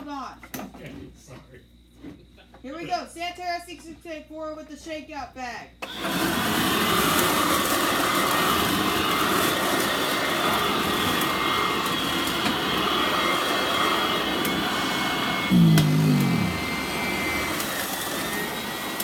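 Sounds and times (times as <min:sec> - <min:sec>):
vacuum cleaner running: 0:05.8 - 0:19.0.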